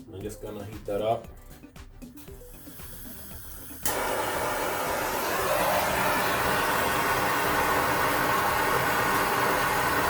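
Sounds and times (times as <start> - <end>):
gas torch hissing: 2.2 - 10.0.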